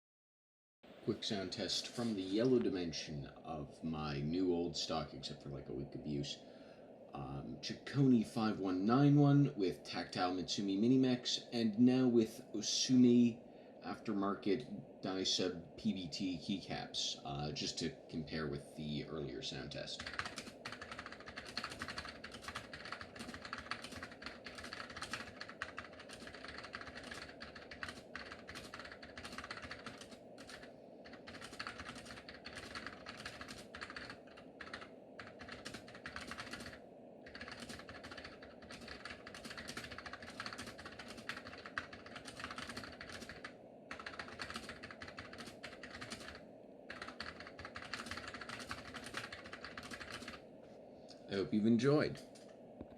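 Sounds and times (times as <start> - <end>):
keyboard typing: 20.0 - 50.4.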